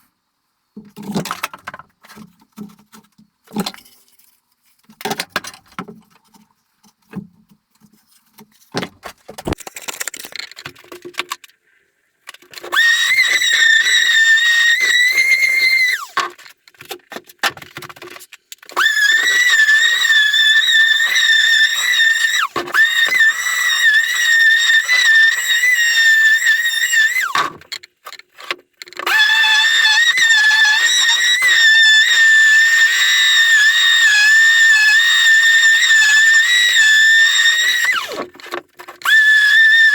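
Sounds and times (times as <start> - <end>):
electric sander whining: 18.8 - 27.5, 29.1 - 38.3, 39.0 - 39.9.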